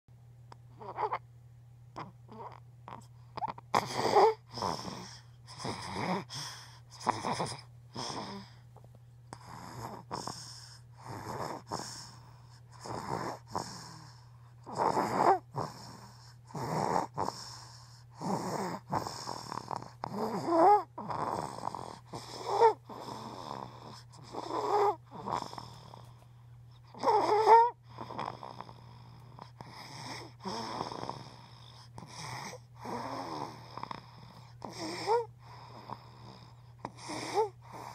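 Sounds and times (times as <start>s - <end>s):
low steady hum: 0.1s - 37.9s
person snoring: 2.0s - 8.6s, 9.4s - 26.2s, 26.9s - 37.9s.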